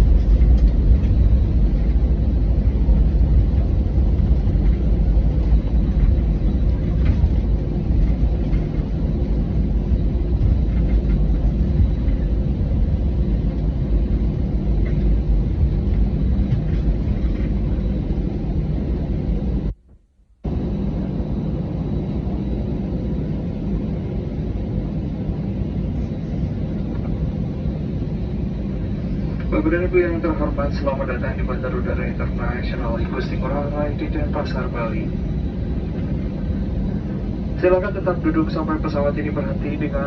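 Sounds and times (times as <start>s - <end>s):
airplane cabin engine rumble: 0.0s - 40.0s
airplane rolling noise: 0.0s - 40.0s.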